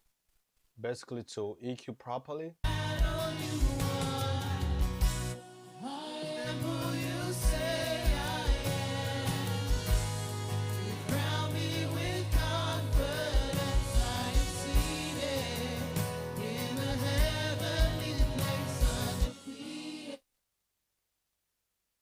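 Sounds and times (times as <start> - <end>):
people singing a worship song: 2.6 - 20.2.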